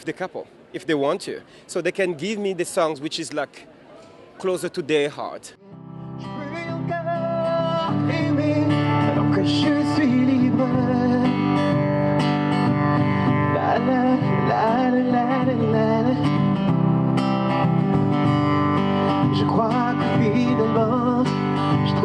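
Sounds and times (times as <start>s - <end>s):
person singing: 5.6s - 11.6s, 13.3s - 16.4s
acoustic guitar chords: 5.6s - 22.0s.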